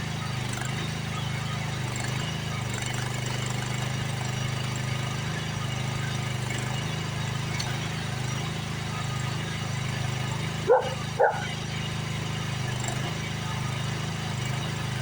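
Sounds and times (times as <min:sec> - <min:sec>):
excavator engine running: 0:00.0 - 0:15.0
dog bark: 0:10.6 - 0:11.6.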